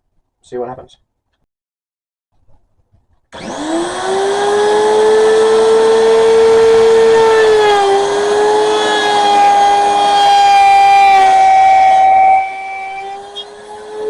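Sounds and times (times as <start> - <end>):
wood router motor whine: 3.4 - 14.0.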